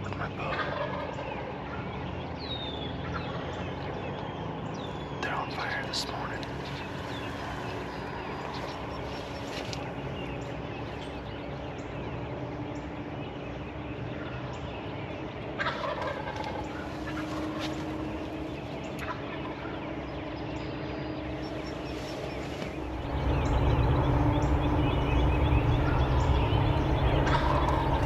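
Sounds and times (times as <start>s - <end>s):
outdoor background sound: 0.0s - 28.0s
turkey gobbling: 0.4s - 1.4s, 15.6s - 17.8s, 23.4s - 28.0s.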